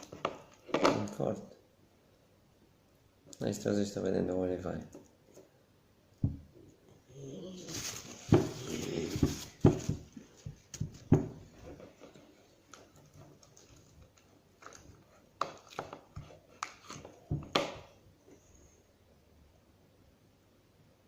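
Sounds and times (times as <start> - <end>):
scraping rustling noise: 7.3 - 15.3.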